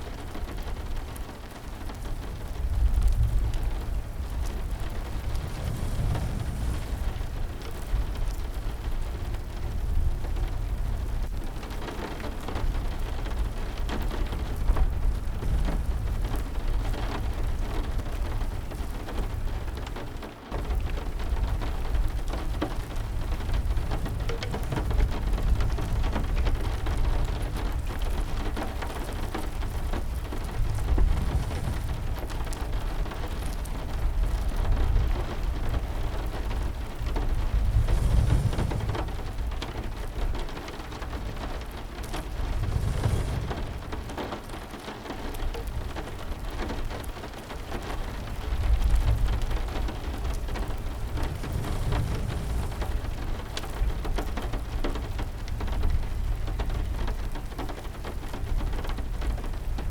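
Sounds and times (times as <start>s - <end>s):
heavy rain: 0.0s - 59.9s
deep rumble: 3.1s - 8.8s, 21.8s - 35.1s, 35.7s - 44.8s, 48.6s - 55.2s.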